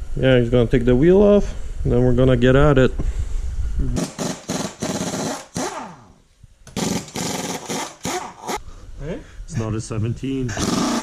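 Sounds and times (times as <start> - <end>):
impact wrench bursts: 4.0 - 8.6, 10.5 - 11.0.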